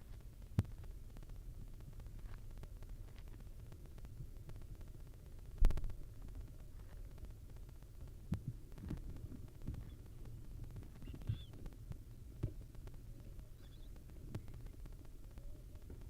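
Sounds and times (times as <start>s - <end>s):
steady low hum: 0.0s - 16.0s
faint high chirps: 10.9s - 12.2s, 13.2s - 15.7s.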